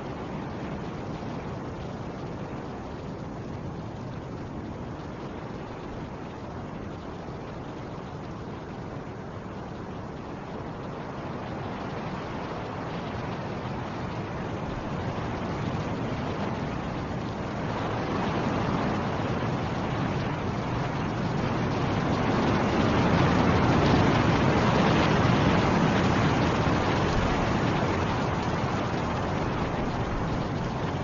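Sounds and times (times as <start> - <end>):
snowstorm wind rushing: 11.0 - 31.0.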